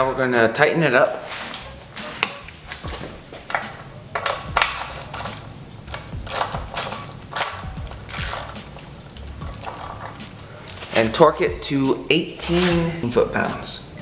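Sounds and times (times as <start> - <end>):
ratchet wrench clicking: 4.2 - 11.1.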